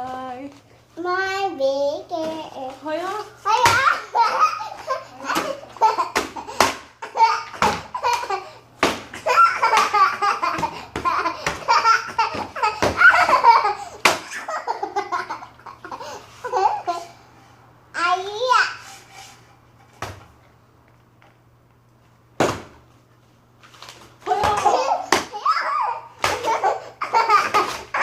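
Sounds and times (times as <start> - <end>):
young child laughing and squealing: 24.4 - 28.0.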